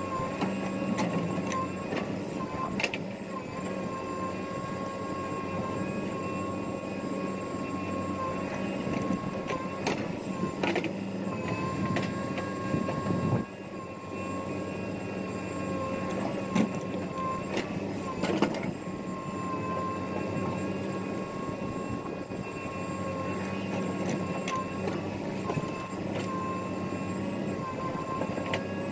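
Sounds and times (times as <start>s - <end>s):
diesel machinery running: 0.0s - 28.9s
high steady whine: 10.3s - 24.8s.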